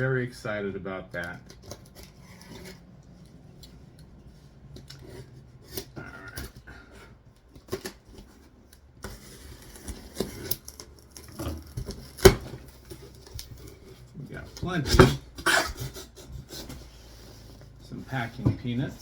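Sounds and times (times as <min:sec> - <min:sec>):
cardboard scraping and rustling: 0:01.2 - 0:19.0
box cutter slicing tape: 0:09.1 - 0:13.7.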